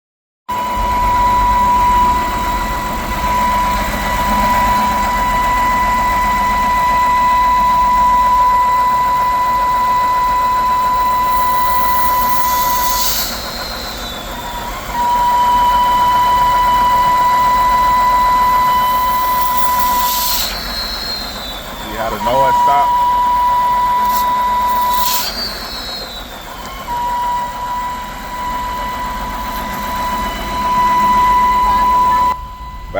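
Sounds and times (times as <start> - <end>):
loud high whistle: 0.5 - 32.9
car engine idling: 1.1 - 24.8, 25.5 - 32.9
brief hiss: 11.3 - 14.2, 24.0 - 26.1.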